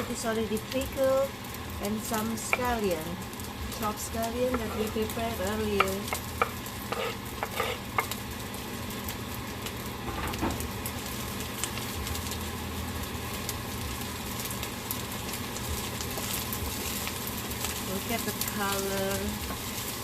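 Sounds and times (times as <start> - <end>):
low steady hum: 0.0 - 20.0
rice sizzling in a pan: 0.0 - 20.0.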